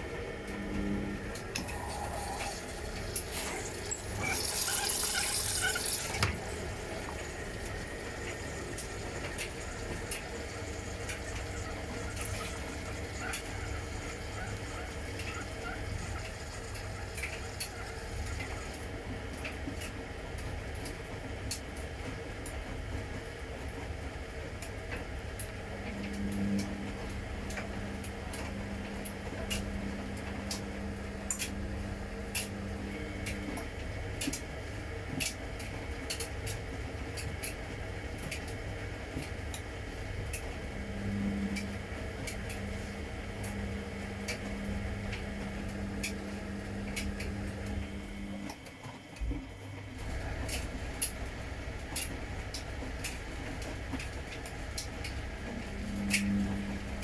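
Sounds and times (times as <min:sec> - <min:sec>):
drum motor humming: 0:00.0 - 0:20.0, 0:39.4 - 0:57.0
washing machine low rumble: 0:00.0 - 0:57.0.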